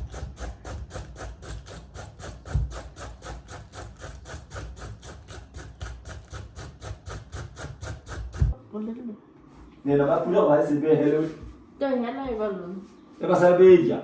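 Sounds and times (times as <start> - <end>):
knife cutting cabbage on board: 0.0 - 8.6.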